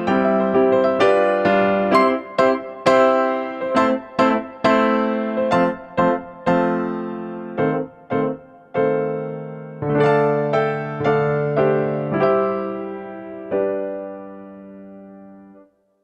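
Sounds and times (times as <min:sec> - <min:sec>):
electric piano melody: 0:00.0 - 0:15.8.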